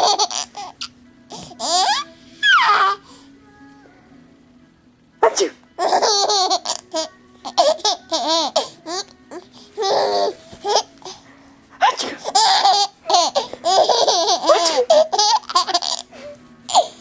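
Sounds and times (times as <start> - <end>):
baby giggling: 0.0 - 0.8, 5.8 - 9.1, 9.8 - 10.9, 11.8 - 16.1.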